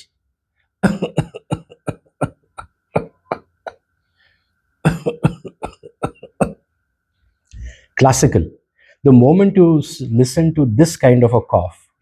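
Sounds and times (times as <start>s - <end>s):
man coughing weakly: 0.8s - 3.8s, 4.8s - 6.6s.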